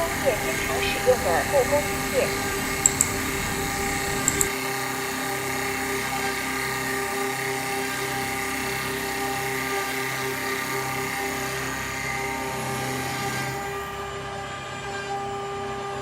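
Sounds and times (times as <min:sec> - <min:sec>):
lathe motor and spindle hum: 0:00.0 - 0:16.0
short clicks: 0:02.8 - 0:03.3, 0:04.1 - 0:04.5.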